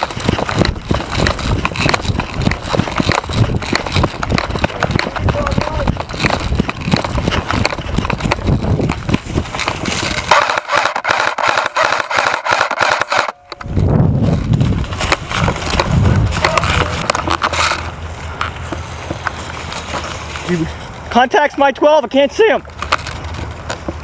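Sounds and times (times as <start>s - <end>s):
camera handling noise: 5.5s - 13.8s, 14.4s - 20.4s.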